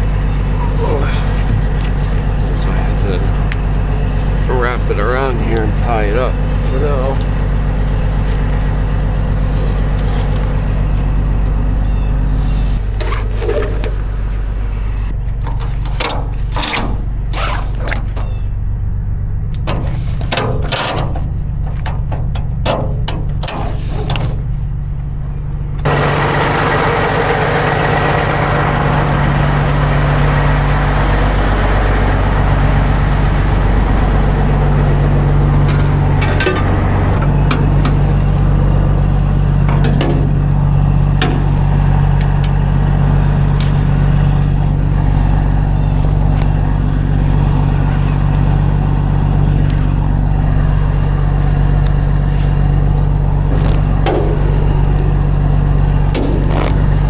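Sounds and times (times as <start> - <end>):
truck diesel engine running: 0.0 - 57.0
scattered clicks and knocks: 15.1 - 18.6, 19.5 - 24.8, 33.2 - 45.3, 48.2 - 57.0.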